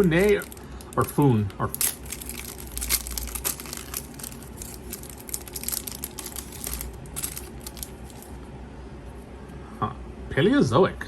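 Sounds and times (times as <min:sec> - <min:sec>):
foil pack crinkling: 0:00.0 - 0:08.4.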